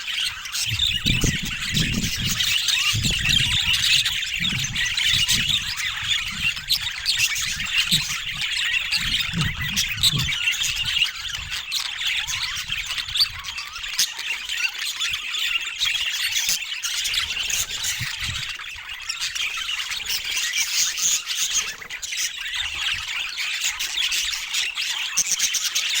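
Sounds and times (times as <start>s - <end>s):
budgerigars chattering and squawking: 0.0s - 26.0s.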